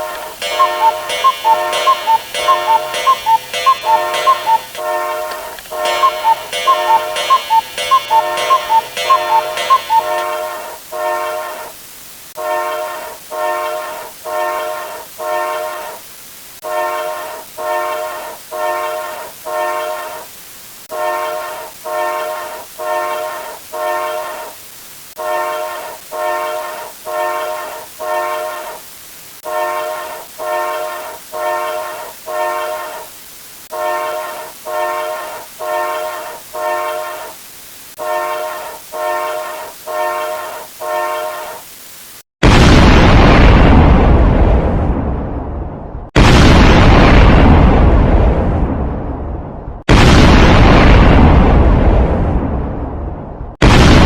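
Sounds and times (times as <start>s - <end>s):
fast ringing clock ticking: 0.0s - 11.6s
pulsing horn-like tone: 0.0s - 11.8s, 12.4s - 16.0s, 16.6s - 20.3s, 20.9s - 24.5s, 25.2s - 28.8s, 29.5s - 33.0s, 33.7s - 37.4s, 38.0s - 41.7s.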